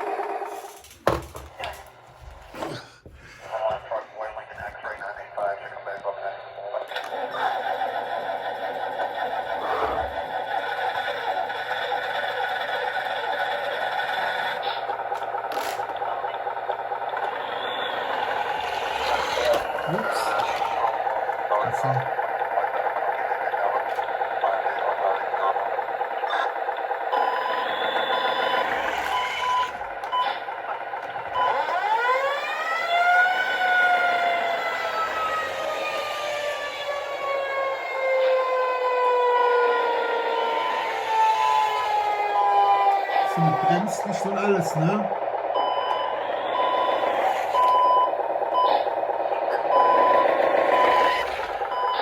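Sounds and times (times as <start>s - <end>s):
toy engine sound from speaker: 5.8s - 52.0s
siren winding up: 6.9s - 16.0s, 16.9s - 23.0s, 26.2s - 52.0s
reversing beeper: 15.9s - 25.6s, 26.2s - 52.0s
short beeps: 45.6s - 48.8s.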